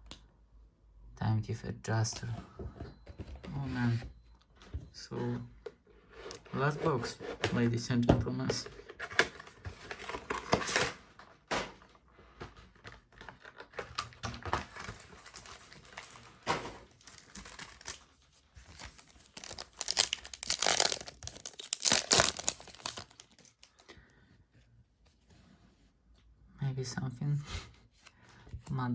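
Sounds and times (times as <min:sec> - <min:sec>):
packaging tearing and crinkling: 0:13.3 - 0:23.8.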